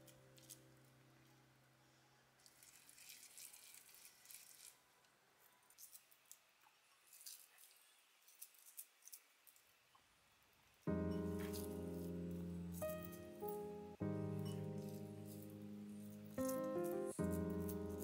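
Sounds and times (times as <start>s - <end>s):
faint clicks and rustles: 2.4s - 18.0s
background music: 10.9s - 18.0s.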